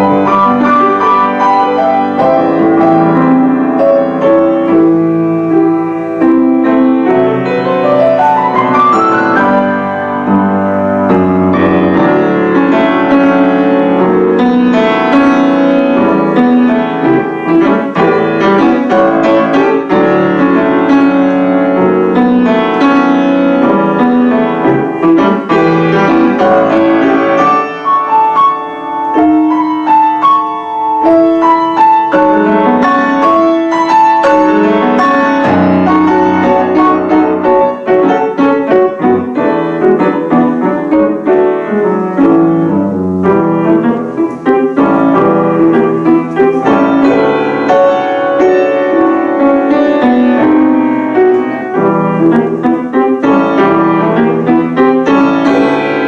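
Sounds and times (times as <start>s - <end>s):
classical piano duet: 0.0s - 56.0s.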